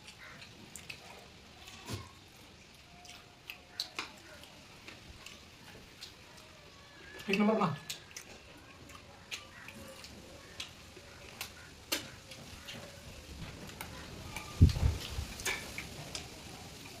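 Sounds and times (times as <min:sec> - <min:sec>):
chewing smacks: 0:00.0 - 0:13.0.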